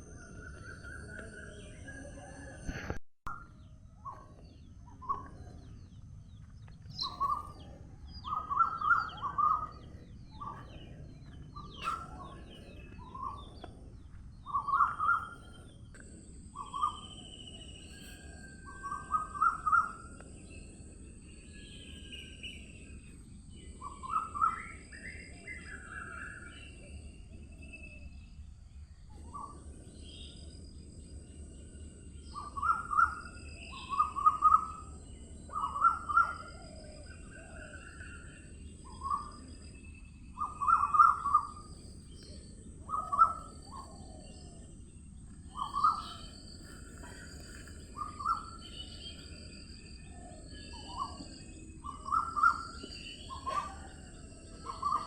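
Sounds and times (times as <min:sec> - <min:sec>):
faint high bird chirps: 0:00.0 - 0:55.0
low steady background rumble: 0:00.0 - 0:55.0.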